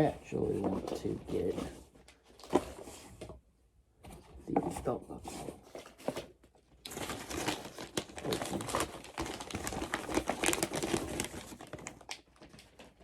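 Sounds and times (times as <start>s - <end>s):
packaging crinkling and rustling: 0.0s - 3.2s, 5.6s - 13.0s.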